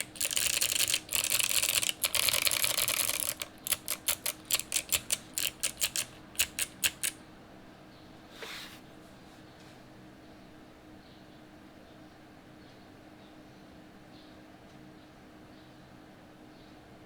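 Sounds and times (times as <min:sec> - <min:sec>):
clicky keyboard keystrokes: 0:00.0 - 0:07.2.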